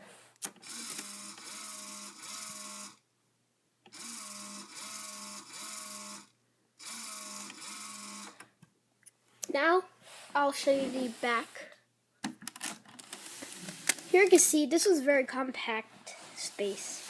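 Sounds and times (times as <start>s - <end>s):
toy motor whirring: 0.4s - 3.0s, 3.9s - 8.5s.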